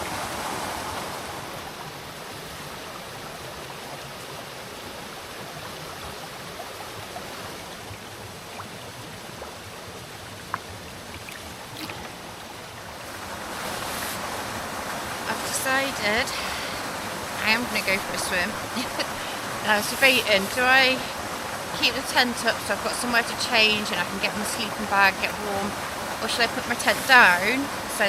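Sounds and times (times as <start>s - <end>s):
waterfall and stream running: 0.0s - 28.0s.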